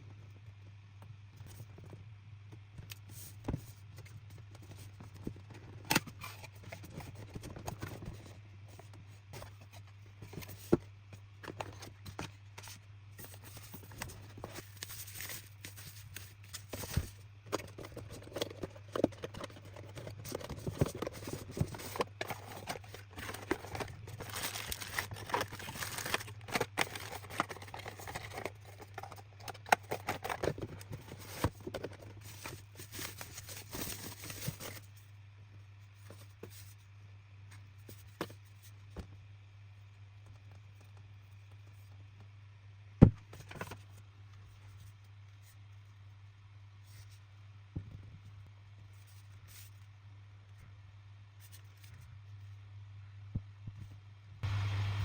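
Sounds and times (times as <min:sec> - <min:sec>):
low electrical hum: 0:00.0 - 0:55.0
cardboard and plastic rustling: 0:03.1 - 0:35.1.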